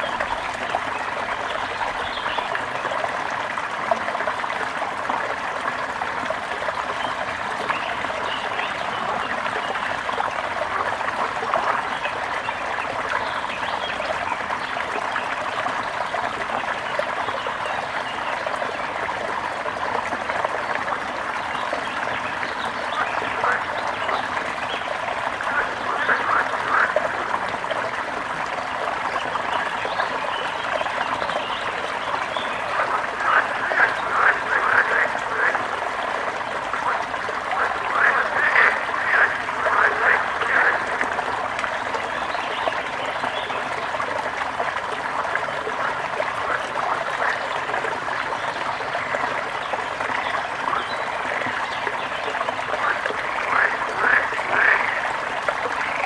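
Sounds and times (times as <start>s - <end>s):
water trickling: 0.0s - 56.0s.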